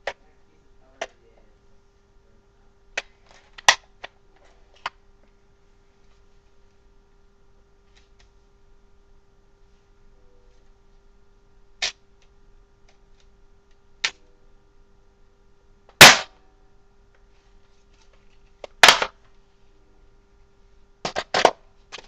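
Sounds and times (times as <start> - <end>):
airsoft gun shots: 15.9 - 16.4, 18.8 - 19.2.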